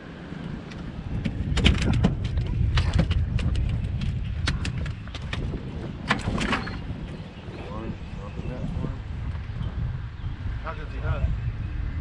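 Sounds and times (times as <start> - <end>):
wind rumble on microphone: 0.0 - 12.0
sharp clicks and knocks: 0.7 - 6.8.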